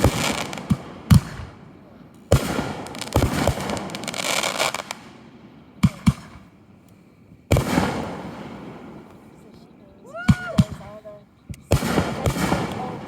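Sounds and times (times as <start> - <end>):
loud firework burst: 0.0 - 6.6, 7.4 - 9.3, 11.7 - 13.0
sharp firework bangs: 0.0 - 6.6, 7.4 - 9.4, 10.2 - 13.0
firework crackling: 0.0 - 13.0.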